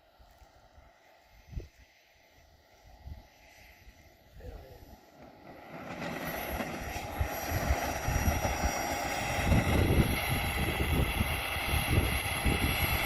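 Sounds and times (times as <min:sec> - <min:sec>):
model jet turbine whine: 0:00.0 - 0:13.0
rushing jet noise: 0:02.9 - 0:13.0.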